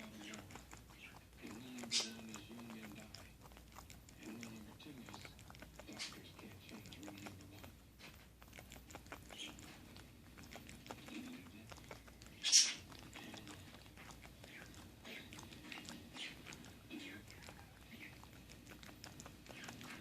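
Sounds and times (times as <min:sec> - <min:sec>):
pig clicking mouth noises: 0:00.0 - 0:20.0.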